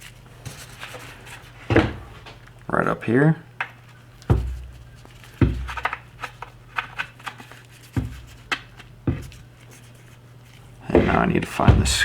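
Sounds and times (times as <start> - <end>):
dull knocks on wood: 4.3 - 4.7, 5.4 - 5.8, 7.9 - 9.4, 10.9 - 12.0.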